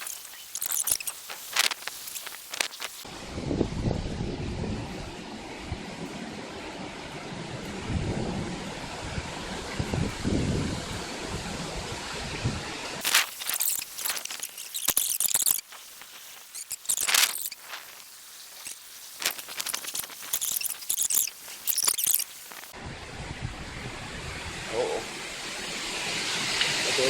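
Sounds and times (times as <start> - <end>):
gusts rustling foliage: 0.0 - 26.9
wind buffeting microphone: 3.1 - 13.0, 22.8 - 24.7.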